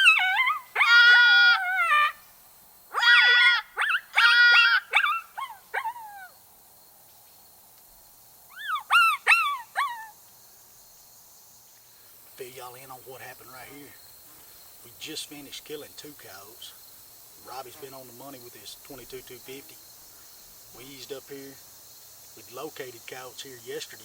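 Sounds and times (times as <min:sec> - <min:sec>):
coyote pup whimpers and yips: 0:00.0 - 0:02.2, 0:02.9 - 0:06.4, 0:08.5 - 0:10.2.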